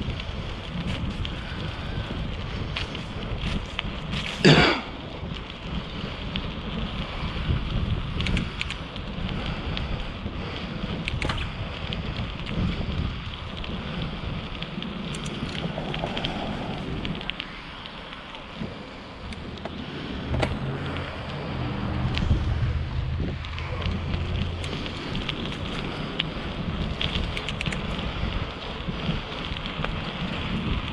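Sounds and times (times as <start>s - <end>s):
road noise rumbling: 0.0s - 30.9s
wind buffeting microphone: 0.0s - 30.9s.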